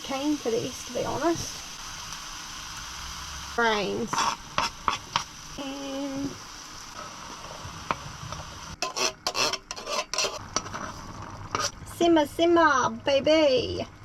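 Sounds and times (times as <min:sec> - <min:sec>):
curry sizzling in a pot: 0:00.0 - 0:12.8
utensil scraping and knocking pot: 0:04.0 - 0:05.3, 0:07.0 - 0:11.8.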